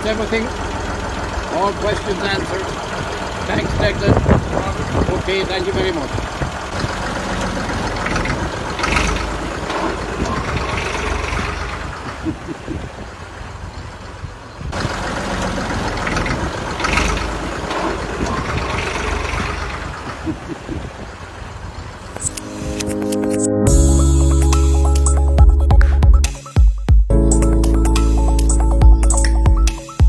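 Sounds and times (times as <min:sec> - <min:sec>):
diesel tractor engine running: 0:00.0 - 0:12.2
music: 0:22.2 - 0:30.0.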